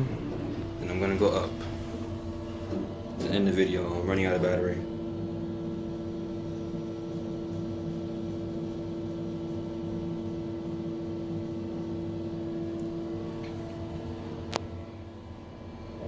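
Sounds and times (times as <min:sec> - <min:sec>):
elevator humming: 0:00.0 - 0:16.0.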